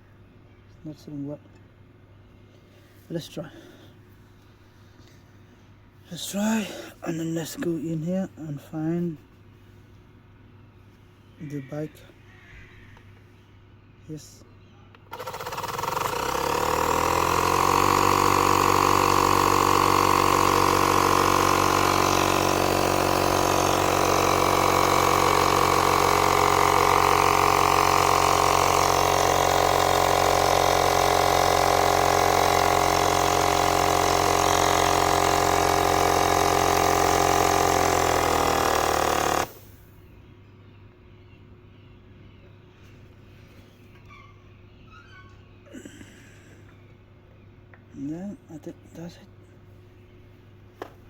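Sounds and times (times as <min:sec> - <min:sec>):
small electric compressor running: 0:15.1 - 0:39.8.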